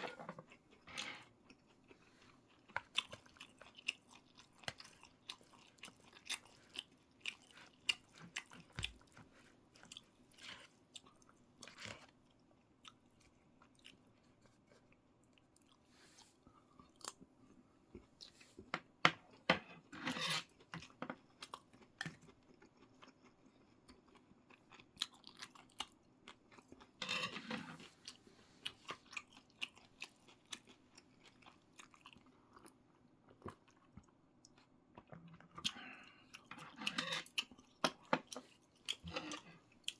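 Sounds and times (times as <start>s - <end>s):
person chewing food: 0.0s - 39.9s.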